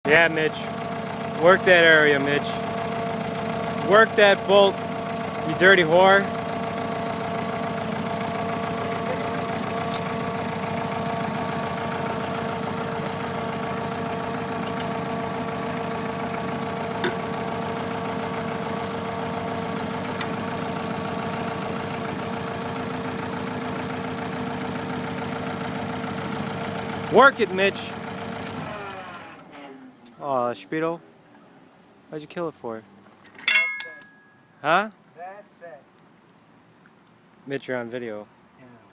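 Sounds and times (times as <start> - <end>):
diesel engine idling: 0.1 - 29.4.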